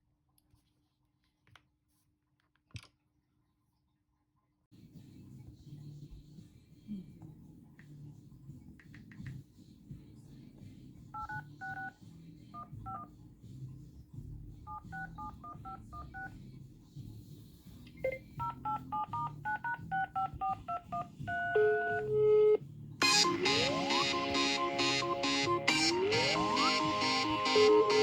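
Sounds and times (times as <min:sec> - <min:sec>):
longer steady tones: 0:21.6 - 0:28.0.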